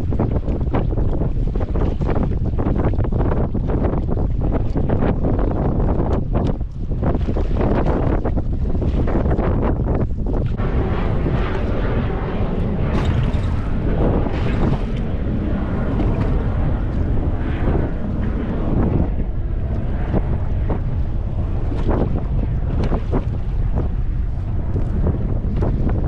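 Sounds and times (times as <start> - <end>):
wind buffeting microphone: 0.0 - 26.0
waves splashing against hull: 5.7 - 26.0.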